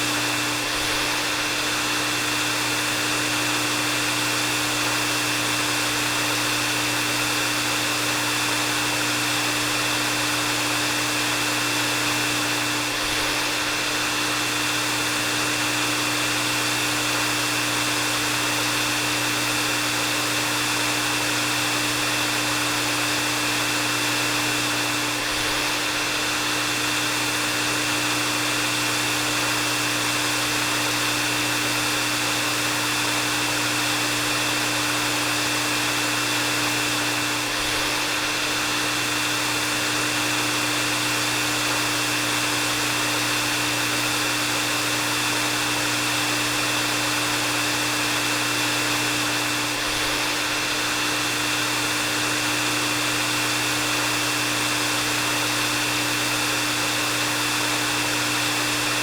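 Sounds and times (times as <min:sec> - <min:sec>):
hair dryer running: 0:00.0 - 0:59.0.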